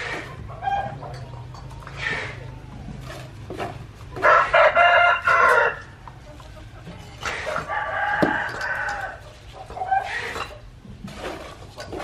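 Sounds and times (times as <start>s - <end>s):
rooster crowing: 4.2s - 5.9s, 7.7s - 9.2s.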